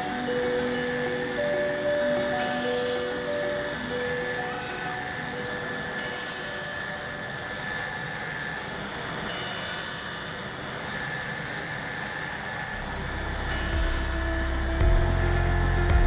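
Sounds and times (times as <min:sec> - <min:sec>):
deep low rumble: 0:12.8 - 0:16.0.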